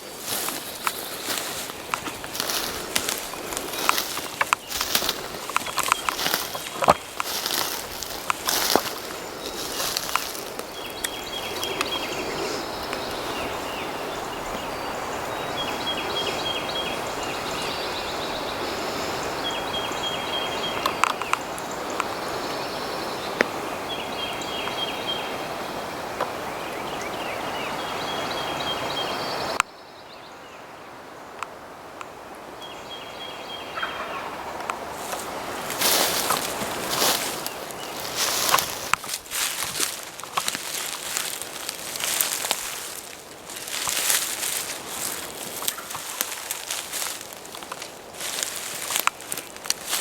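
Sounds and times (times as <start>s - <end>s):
turkey gobbling: 33.8s - 34.6s.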